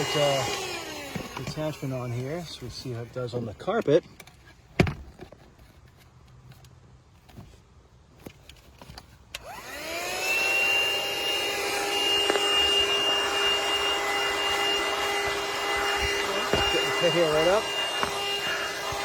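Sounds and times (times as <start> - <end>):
vacuum cleaner motor whine: 0.0 - 3.0, 9.4 - 19.0.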